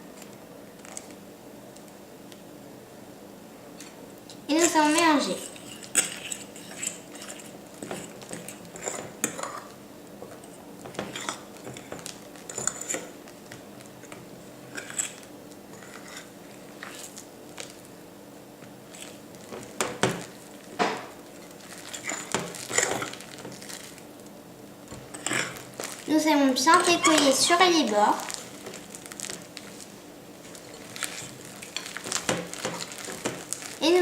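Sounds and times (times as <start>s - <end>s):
utensil scraping a bowl: 4.6s - 9.7s, 14.8s - 17.1s.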